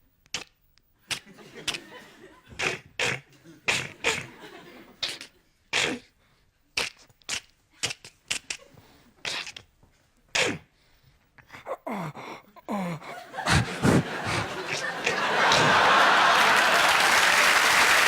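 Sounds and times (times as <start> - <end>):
mouth hissing and clicking effects: 0.2 - 1.8, 2.6 - 4.2, 5.0 - 6.0, 6.8 - 9.7, 13.5 - 15.7.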